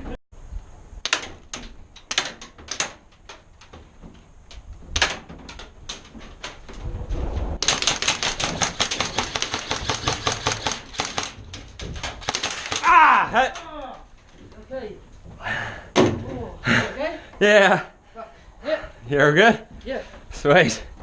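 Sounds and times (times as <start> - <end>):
airsoft gunshots: 7.6 - 11.4, 12.2 - 13.0.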